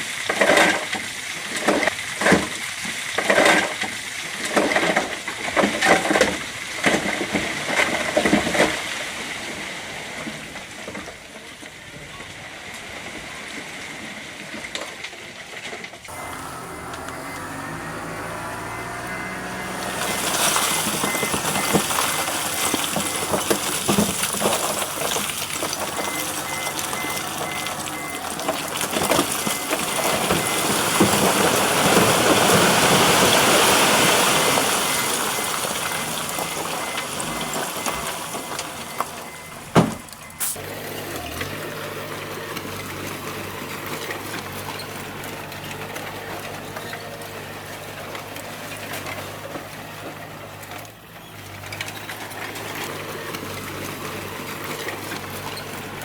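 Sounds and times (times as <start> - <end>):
bulldozer diesel engine: 16.1 - 56.0.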